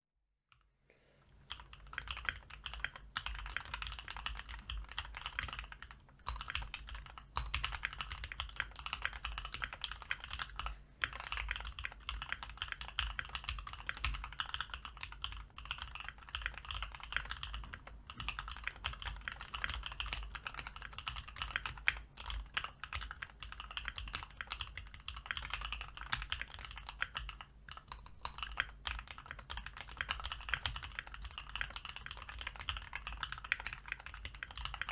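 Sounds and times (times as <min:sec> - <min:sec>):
fast typing on mechanical keyboard: 0:01.4 - 0:34.9.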